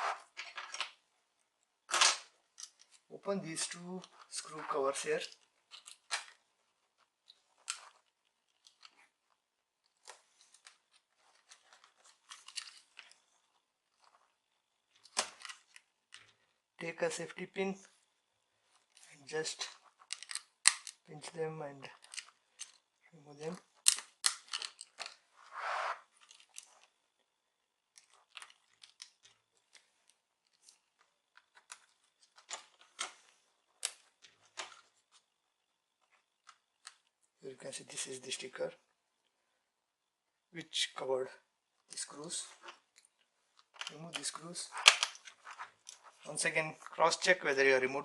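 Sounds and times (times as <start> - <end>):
short scrape: 25.4 - 26.1.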